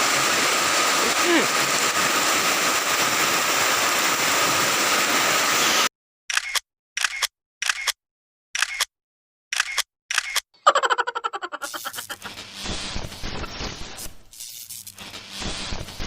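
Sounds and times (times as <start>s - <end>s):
heavy rain falling: 0.0s - 5.8s
short sharp clicks: 6.3s - 8.0s, 8.6s - 8.9s, 9.5s - 10.5s.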